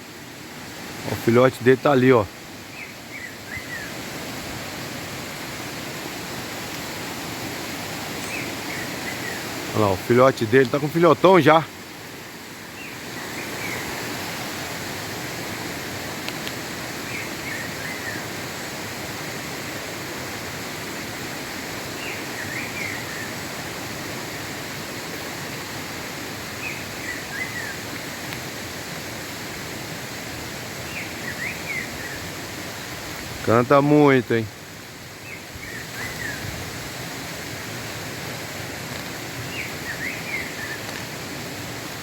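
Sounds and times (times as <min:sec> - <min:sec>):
flowing water rushing: 0:00.0 - 0:42.0
bird singing whistled notes: 0:02.7 - 0:04.0, 0:08.2 - 0:09.5, 0:17.1 - 0:18.3, 0:22.0 - 0:23.3, 0:26.6 - 0:27.8, 0:30.9 - 0:32.2, 0:35.2 - 0:36.4, 0:39.5 - 0:40.8.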